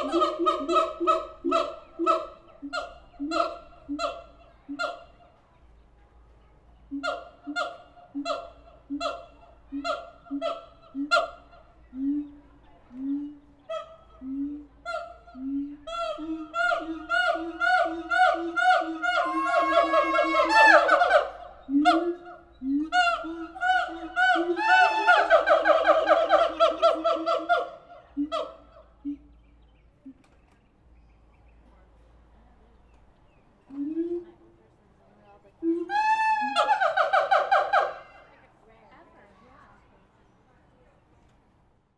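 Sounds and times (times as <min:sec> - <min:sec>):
gibbon calls with barks: 0:00.0 - 0:05.3, 0:06.9 - 0:29.3, 0:35.6 - 0:38.3
low hoots: 0:06.9 - 0:29.3
apes whooping calls: 0:15.5 - 0:22.3, 0:35.6 - 0:38.2.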